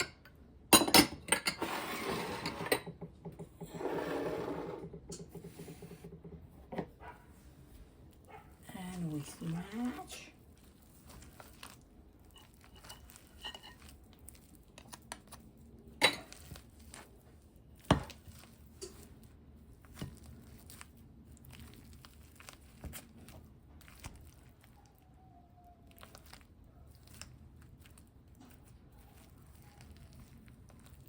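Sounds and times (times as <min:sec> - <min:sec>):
potatoes squishing: 0:07.4 - 0:31.0.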